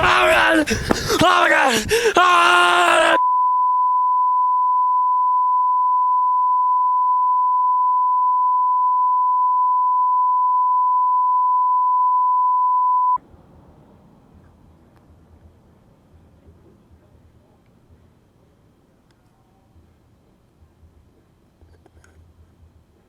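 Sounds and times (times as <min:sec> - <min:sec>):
steady electronic beep tone: 0:03.2 - 0:13.2
faint background noise: 0:13.2 - 0:23.0.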